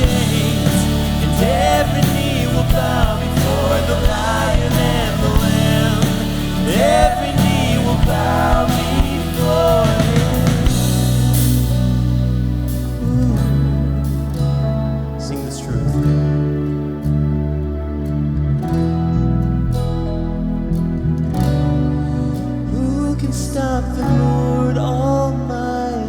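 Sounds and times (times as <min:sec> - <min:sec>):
person singing lead: 0:00.0 - 0:11.9
drums: 0:00.0 - 0:14.7
band playing worship song: 0:00.0 - 0:26.0.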